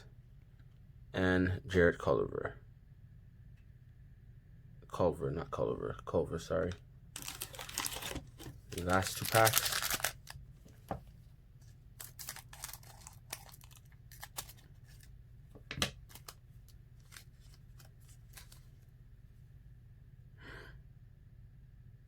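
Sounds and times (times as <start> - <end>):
wrapper crinkling and crackling: 7.2 - 10.4, 12.0 - 15.1, 15.9 - 18.7
wrapper snapping: 7.2 - 10.4, 12.0 - 15.1
cards rustling: 7.2 - 11.0, 11.6 - 18.9.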